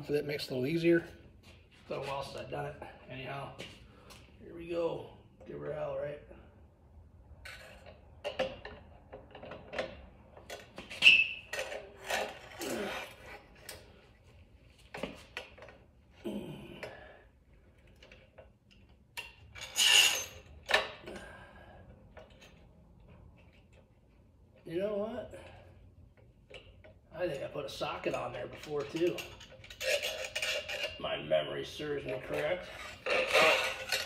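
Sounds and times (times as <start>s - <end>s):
metal knocks clicks and scrapes: 7.5s - 12.6s, 28.0s - 31.1s, 32.0s - 34.0s.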